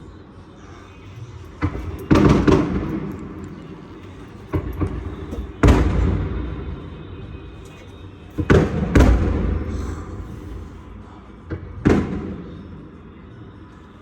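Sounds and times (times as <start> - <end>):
fireworks bangs with rumbling echo: 5.4 - 7.0, 8.5 - 10.1, 11.5 - 12.8.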